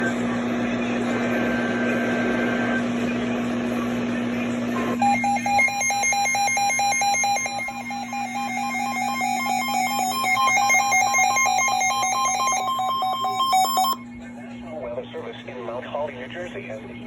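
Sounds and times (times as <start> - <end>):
digital data tones warbling: 5.0 - 14.0
steady low hum: 5.0 - 17.0.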